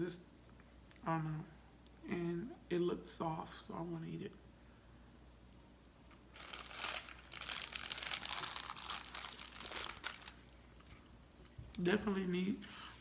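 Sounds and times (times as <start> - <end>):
plastic wrapper crinkling: 6.0 - 11.0.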